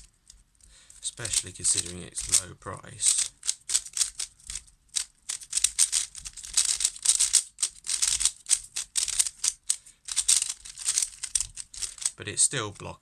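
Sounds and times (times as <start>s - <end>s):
plastic puzzle cube clacking: 1.1s - 12.9s.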